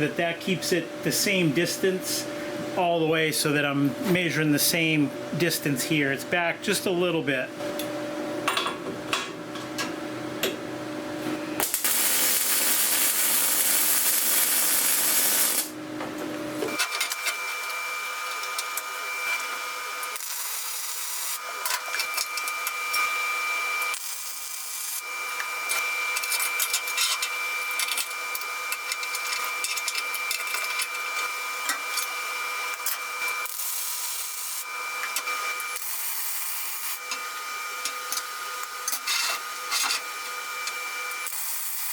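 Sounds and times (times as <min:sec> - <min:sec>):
welding arc crackling: 0:11.6 - 0:15.8, 0:16.7 - 0:41.9.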